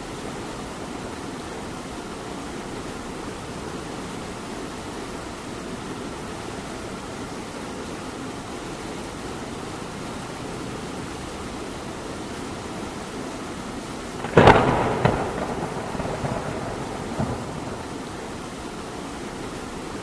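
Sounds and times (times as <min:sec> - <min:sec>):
rain hiss: 0:00.0 - 0:20.0
thunder crack: 0:14.2 - 0:18.4
thunder rumble: 0:14.2 - 0:18.6.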